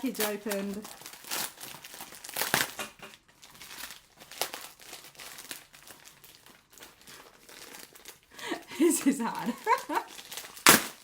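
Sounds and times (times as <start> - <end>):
packaging crinkling and tearing: 0.0 - 11.0.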